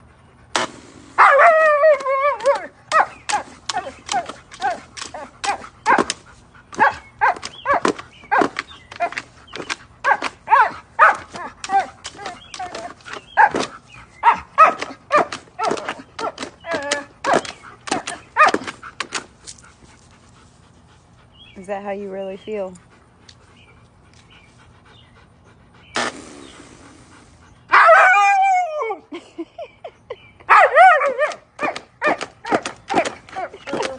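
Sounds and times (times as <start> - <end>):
dog crying: 1.2 - 6.1, 10.1 - 13.6, 14.2 - 18.6, 27.7 - 29.2
dog barking: 2.4 - 4.8, 6.8 - 9.2, 10.0 - 13.6, 14.2 - 16.4, 30.5 - 33.9.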